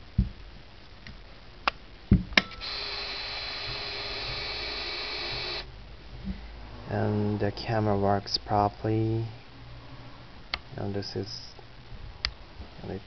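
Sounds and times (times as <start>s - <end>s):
film-transport motor whirring: 2.5s - 5.7s.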